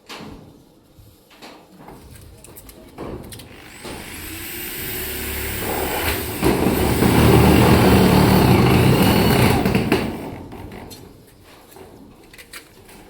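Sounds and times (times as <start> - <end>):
vehicle engine running: 3.7 - 10.0.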